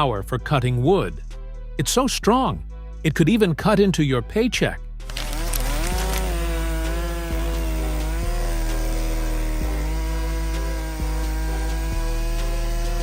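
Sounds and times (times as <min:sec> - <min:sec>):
chainsaw running at high revs: 0:05.1 - 0:13.0.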